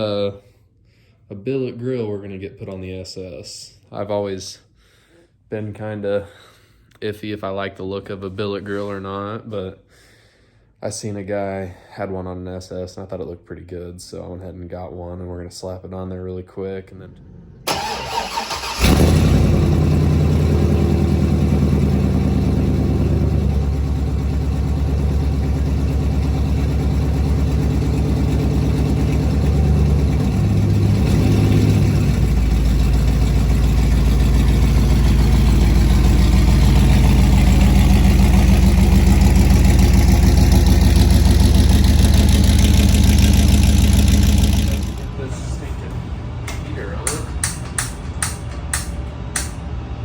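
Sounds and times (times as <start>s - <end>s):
car engine idling: 17.7s - 45.2s.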